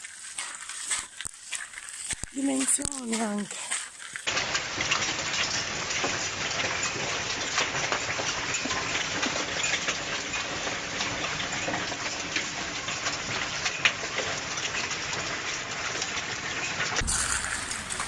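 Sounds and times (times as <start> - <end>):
small stones pattering on ground: 0.0 - 6.2, 17.0 - 18.0.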